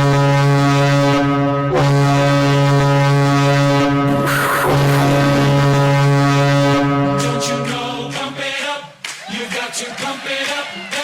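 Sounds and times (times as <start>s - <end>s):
goal horn blaring: 0.0s - 8.4s.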